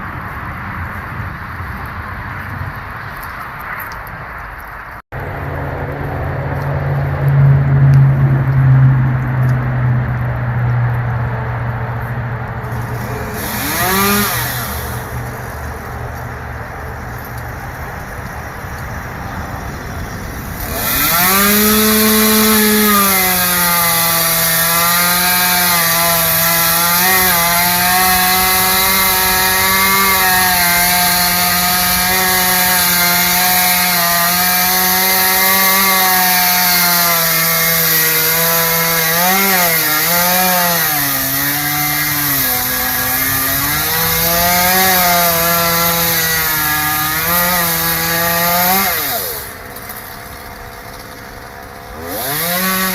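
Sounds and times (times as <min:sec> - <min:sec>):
chainsaw cutting wood: 0:12.6 - 0:19.0, 0:20.0 - 0:52.9.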